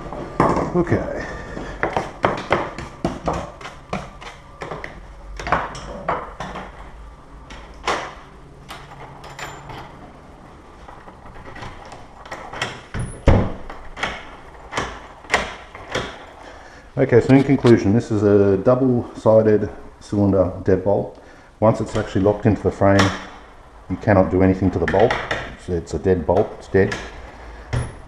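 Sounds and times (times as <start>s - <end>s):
door lock clicks and knocks: 11.4s - 16.3s.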